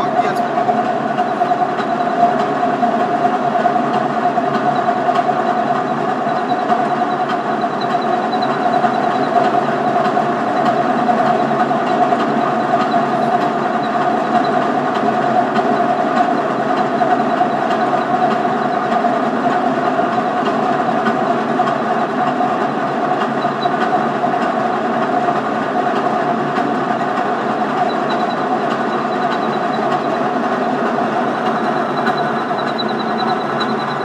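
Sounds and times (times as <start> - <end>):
lathe motor whining: 0.0 - 34.0.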